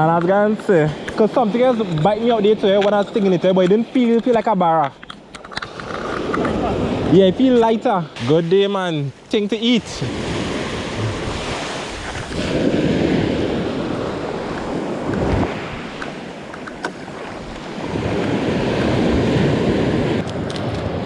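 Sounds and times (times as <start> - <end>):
sea waves breaking on beach: 5.6 - 21.0
wind buffeting microphone: 9.0 - 21.0.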